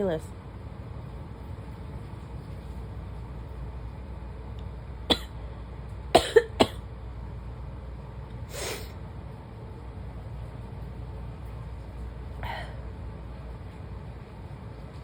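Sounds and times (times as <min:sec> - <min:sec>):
woman coughing: 0:05.1 - 0:05.4, 0:06.2 - 0:06.8.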